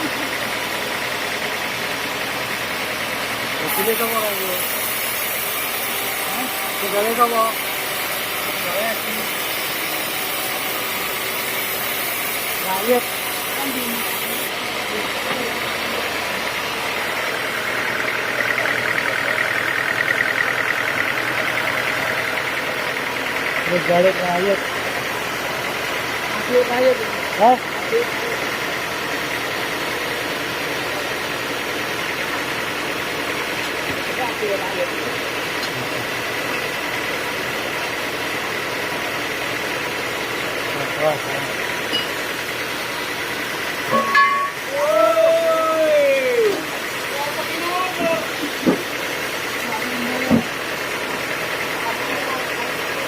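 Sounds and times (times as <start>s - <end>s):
high fluttering whine: 0.0s - 33.5s
sawmill machinery running: 0.0s - 53.0s.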